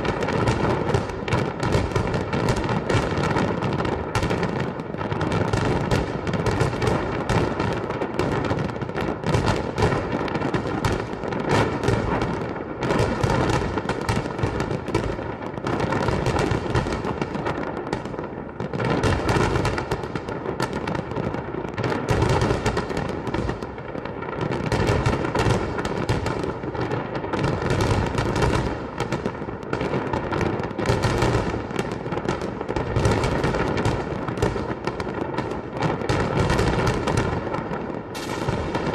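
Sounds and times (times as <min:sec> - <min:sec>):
fireworks banging: 0:00.0 - 0:38.9.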